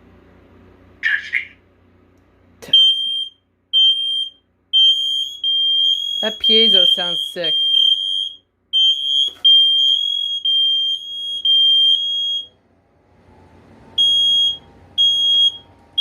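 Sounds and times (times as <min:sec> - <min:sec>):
smoke alarm beeping: 0:02.7 - 0:12.6, 0:14.0 - 0:16.0.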